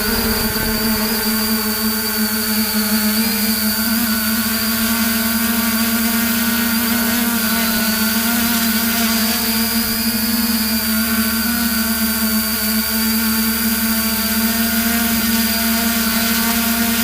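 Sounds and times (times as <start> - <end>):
drone motors humming: 0.0 - 4.1.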